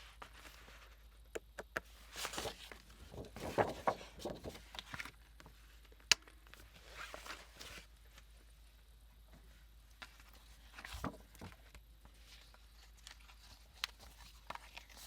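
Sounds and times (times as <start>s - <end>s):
paper rustling: 1.9s - 5.7s, 6.5s - 8.3s, 10.0s - 15.0s.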